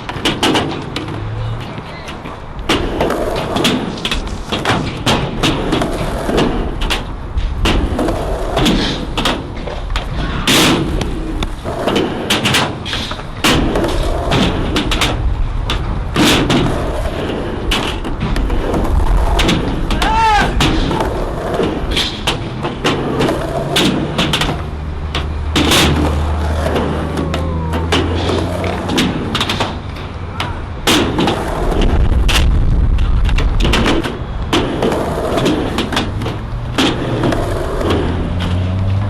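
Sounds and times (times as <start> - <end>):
skateboards clacking on ground: 0.0 - 39.0
skateboards rolling on concrete: 0.0 - 39.0.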